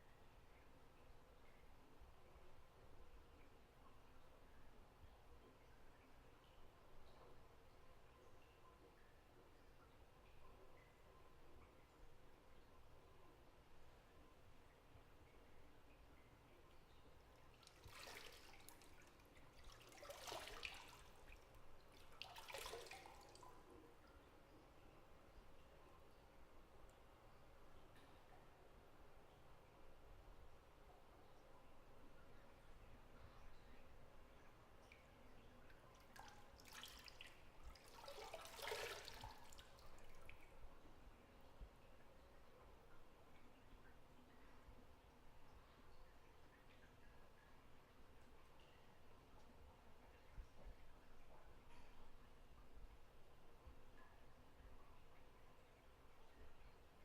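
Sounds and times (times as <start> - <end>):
small water drips: 0.0 - 57.0
bathwater sloshing and trickling: 16.6 - 24.3, 33.2 - 41.2.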